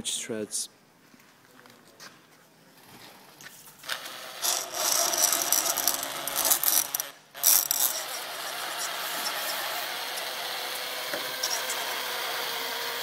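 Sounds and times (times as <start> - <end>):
power drill drilling: 3.8 - 13.0.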